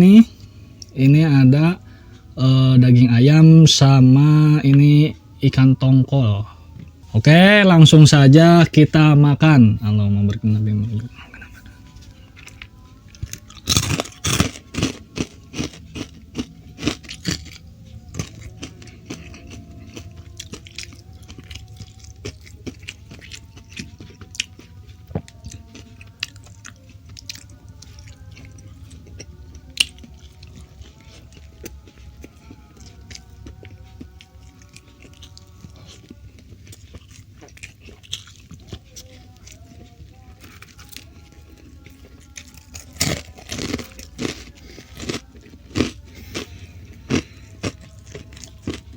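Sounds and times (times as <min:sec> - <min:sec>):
soft background music: 0:00.0 - 0:48.9
crunchy food chewing: 0:10.2 - 0:48.9.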